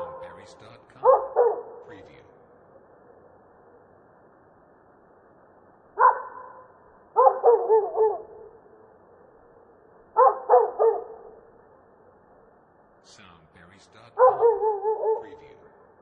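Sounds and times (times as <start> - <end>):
dog barking: 0.0 - 0.4, 1.0 - 1.9, 6.0 - 8.6, 10.2 - 11.5, 14.2 - 15.7
faint street background: 0.0 - 16.0.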